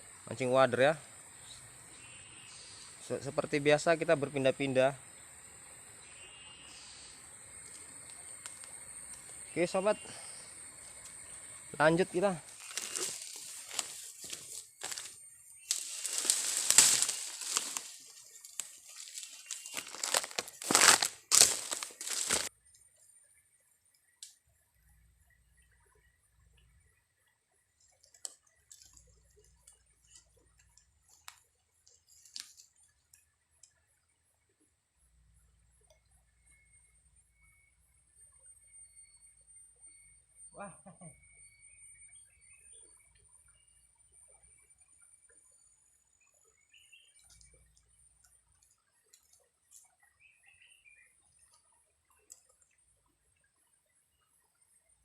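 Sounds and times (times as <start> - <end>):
steady high hiss: 0.0 - 22.5
faint irregular clicks: 7.5 - 9.5, 23.8 - 24.5, 26.5 - 34.0, 35.8 - 36.2, 47.2 - 50.0, 51.4 - 53.5
soft ticks: 27.8 - 33.8, 35.8 - 36.2, 47.2 - 49.9, 51.4 - 52.8.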